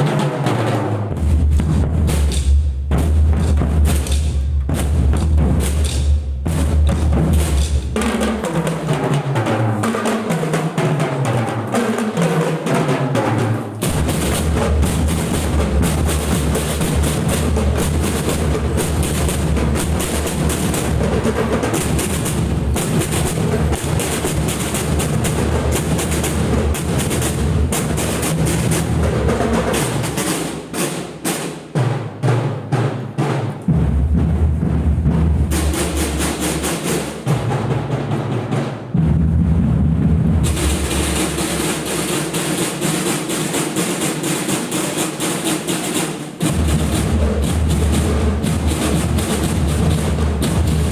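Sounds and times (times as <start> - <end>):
marching drum band: 0.0 - 50.9
heavy bass drum: 1.1 - 8.6, 13.8 - 30.1.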